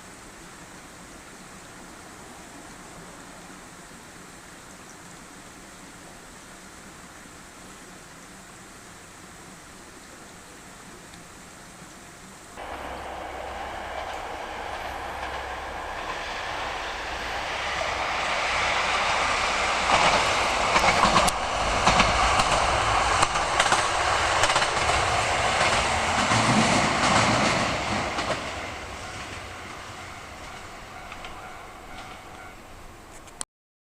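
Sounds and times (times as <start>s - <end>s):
diesel railcar passing: 12.5s - 33.3s
wheels clacking over rail joints: 12.6s - 32.6s.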